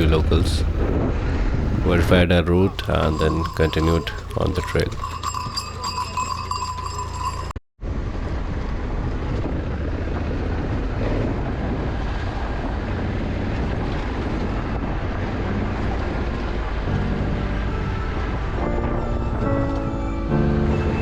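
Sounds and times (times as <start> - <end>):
motorcycle engines running: 0.0 - 1.0
road and wind noise: 0.0 - 5.2, 7.8 - 19.9.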